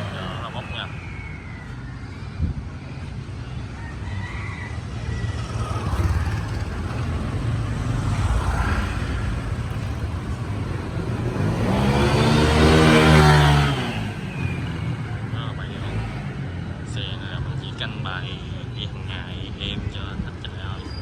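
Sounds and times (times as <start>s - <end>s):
motorbike engine running: 4.8s - 15.5s.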